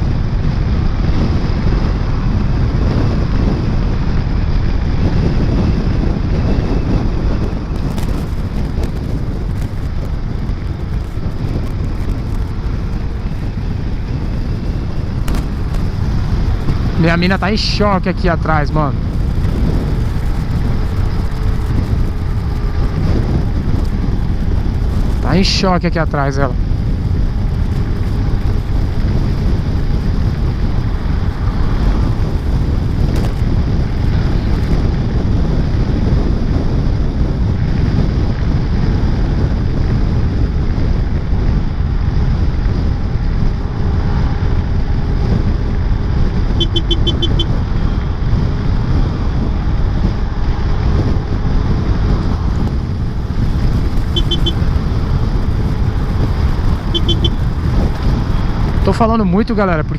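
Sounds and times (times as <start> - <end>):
traffic: 0.0 - 59.9
wind and rain on microphone: 0.0 - 59.9
motor scooter engine: 46.5 - 47.6, 52.5 - 58.4
rapid beeps: 46.6 - 47.5, 54.2 - 54.6, 56.9 - 57.4.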